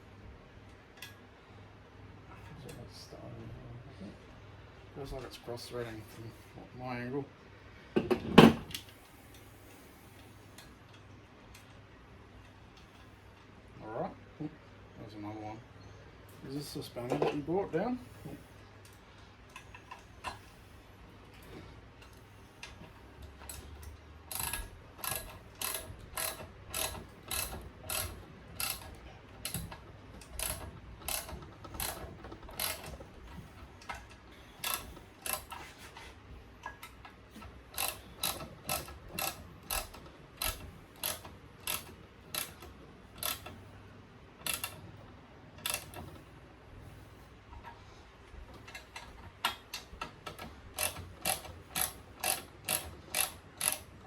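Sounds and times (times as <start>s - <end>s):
ratcheting spanner clicking: 22.0s - 35.7s, 36.6s - 43.7s, 44.4s - 44.9s, 45.6s - 46.3s, 48.6s - 54.0s.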